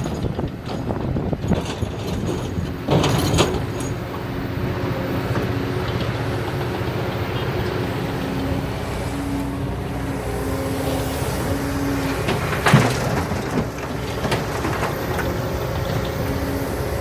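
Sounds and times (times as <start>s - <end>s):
excavator diesel engine humming: 0.0s - 17.0s.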